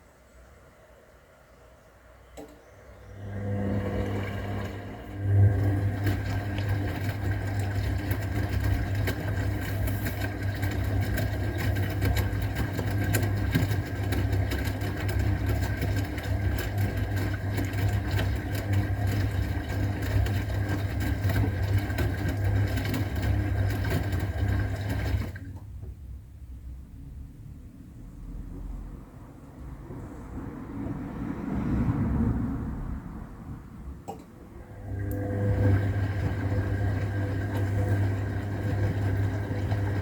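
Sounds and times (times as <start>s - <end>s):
washing machine motor humming: 2.4s - 26.1s, 34.0s - 40.0s.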